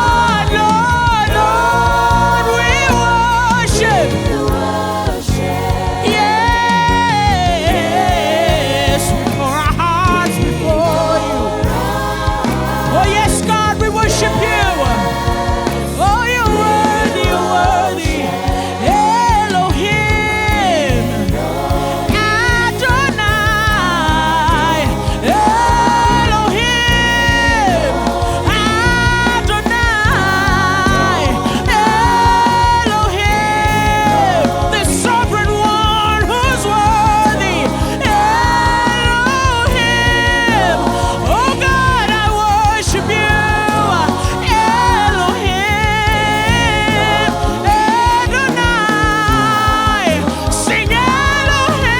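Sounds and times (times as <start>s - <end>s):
sustained keyboard chords: 0.0s - 51.9s
voices singing held notes: 0.0s - 51.9s.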